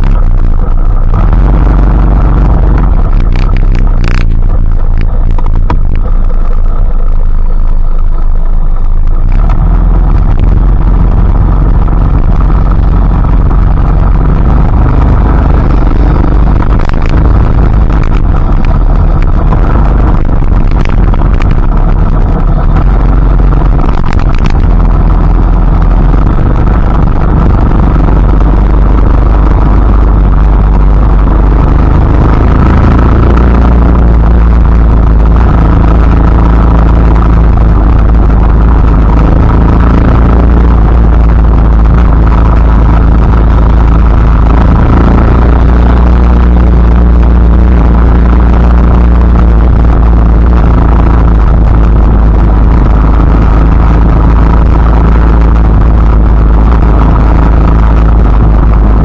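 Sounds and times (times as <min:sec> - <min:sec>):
deep constant rumble: 0:00.0 - 0:59.0.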